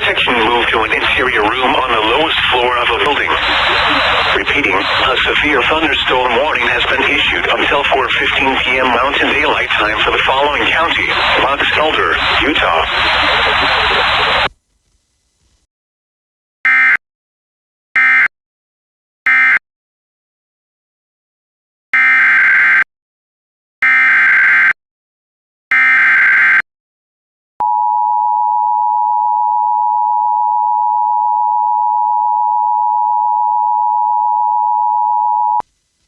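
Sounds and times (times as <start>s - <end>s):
raspy header data bursts: 0.0s - 14.5s
short data burst: 0.0s - 14.5s.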